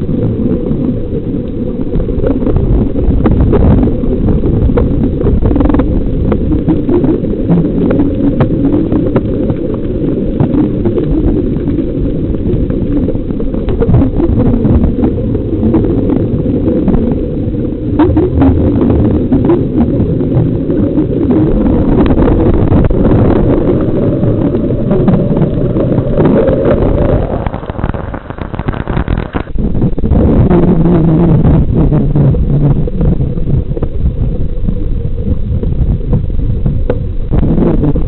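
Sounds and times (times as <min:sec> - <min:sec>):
crackles: 0:00.0 - 0:38.0
wind buffeting microphone: 0:13.7 - 0:38.0.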